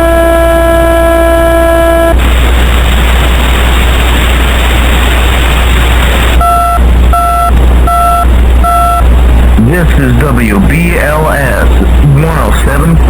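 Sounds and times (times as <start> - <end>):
low hum: 0.0 - 13.0
broadcast static: 1.8 - 13.0
short electronic beeps: 6.4 - 9.0.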